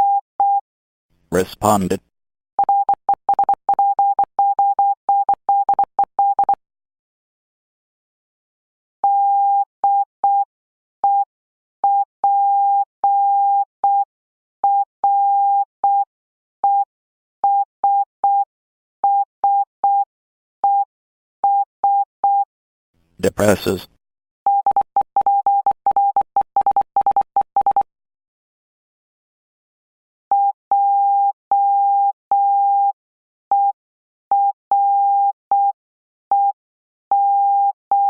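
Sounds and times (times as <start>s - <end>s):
morse code beeps: 24.5s - 27.8s.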